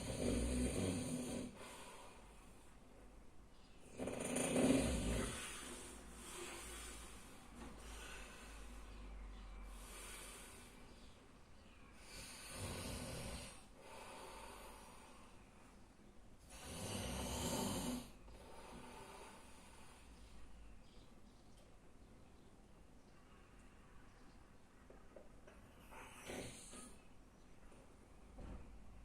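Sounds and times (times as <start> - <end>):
man snoring: 0.0 - 1.6, 3.9 - 5.8, 12.1 - 13.6, 16.5 - 18.2, 26.1 - 26.9.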